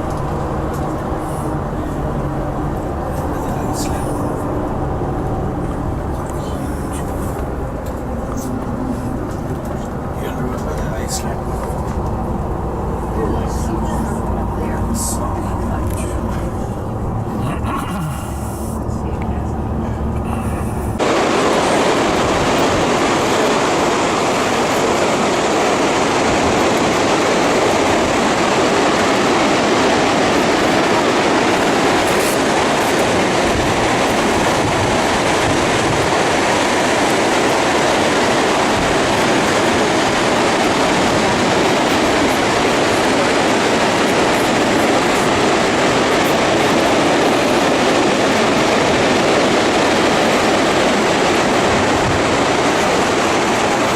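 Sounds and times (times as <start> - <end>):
waterfall roar: 19.5 - 53.9.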